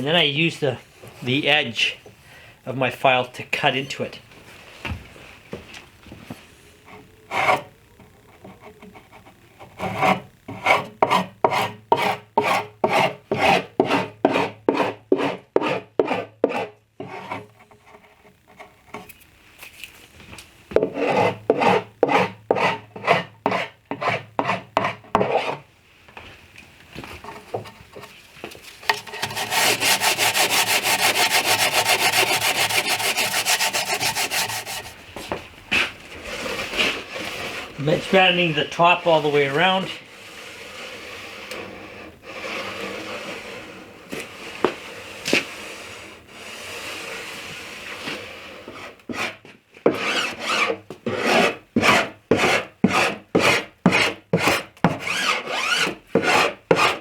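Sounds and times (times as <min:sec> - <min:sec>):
hand file rasping on wood: 0:08.4 - 0:17.6, 0:20.8 - 0:25.6, 0:28.9 - 0:35.0, 0:44.4 - 0:57.0.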